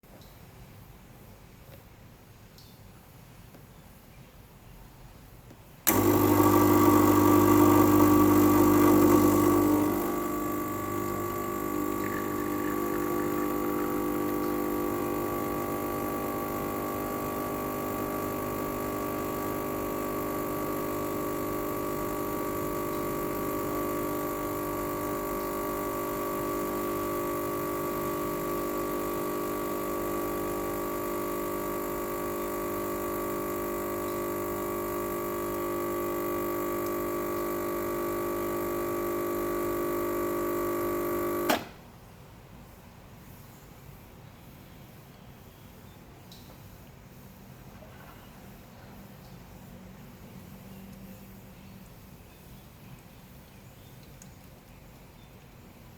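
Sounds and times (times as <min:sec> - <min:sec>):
espresso machine pump humming: 0:05.9 - 0:41.7.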